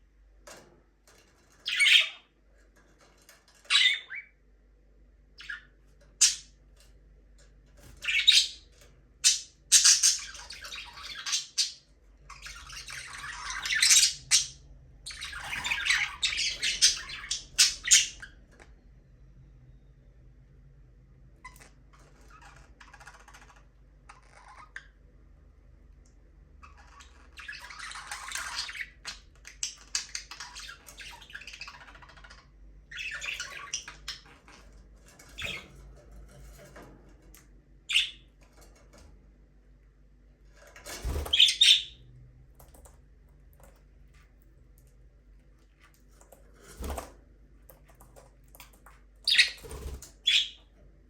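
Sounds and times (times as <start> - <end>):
budgerigars chattering and squawking: 1.7 - 2.2, 3.7 - 4.2, 8.0 - 8.6, 9.2 - 18.4, 26.7 - 34.4, 37.9 - 38.2, 41.1 - 42.0, 49.3 - 50.7.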